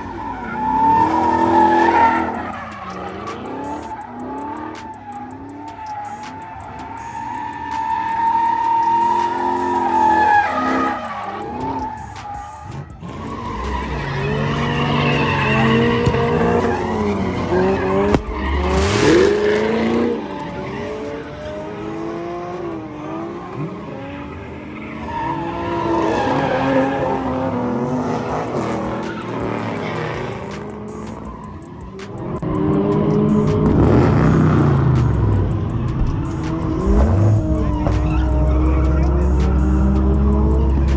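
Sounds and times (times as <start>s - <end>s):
car engines revving: 0.0s - 40.9s
tires squealing on pavement: 0.0s - 40.9s.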